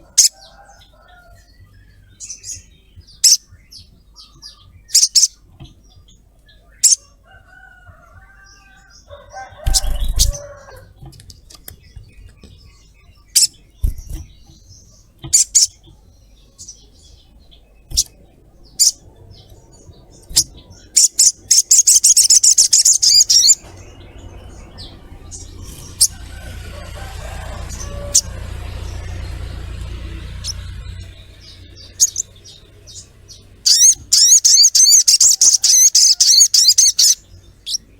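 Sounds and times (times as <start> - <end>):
bird chirping: 0.0 - 37.9
lower-pitched bird calls: 0.0 - 37.9
bird rattling trill: 9.6 - 11.0.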